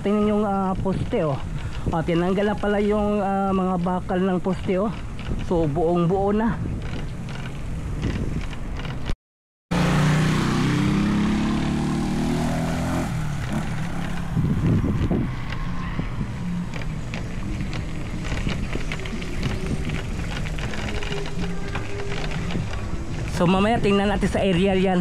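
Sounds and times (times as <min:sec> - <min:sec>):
rough outdoor noise: 0:00.0 - 0:25.0
vehicle engine running: 0:09.7 - 0:23.9.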